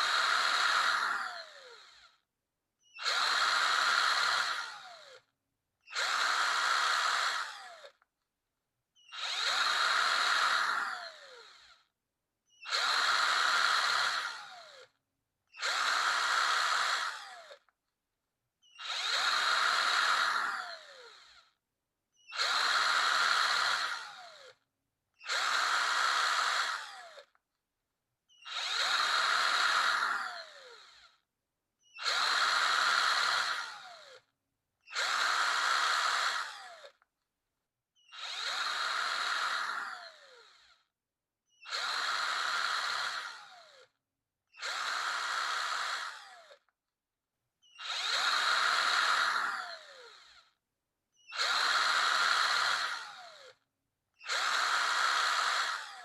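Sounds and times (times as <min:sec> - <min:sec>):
electric drill bursts: 0:00.0 - 0:02.2, 0:02.8 - 0:05.3, 0:05.9 - 0:08.0, 0:09.0 - 0:11.9, 0:12.6 - 0:14.9, 0:15.5 - 0:17.7, 0:18.6 - 0:21.6, 0:22.2 - 0:24.6, 0:25.2 - 0:27.4, 0:28.3 - 0:31.2, 0:31.8 - 0:34.3, 0:34.9 - 0:37.0, 0:38.0 - 0:40.8, 0:41.6 - 0:43.9, 0:44.6 - 0:46.6, 0:47.6 - 0:50.6, 0:51.2 - 0:53.6, 0:54.2 - 0:56.0.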